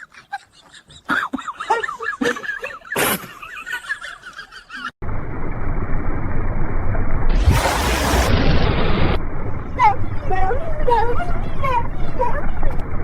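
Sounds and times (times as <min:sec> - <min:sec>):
steady low rumbling noise: 0:05.0 - 0:13.0.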